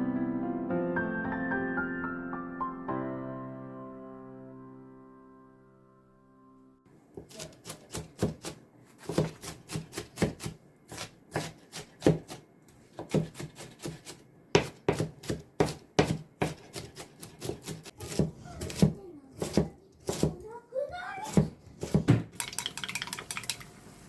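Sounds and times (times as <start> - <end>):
knife chopping on cutting board: 7.2 - 20.4, 21.3 - 22.3.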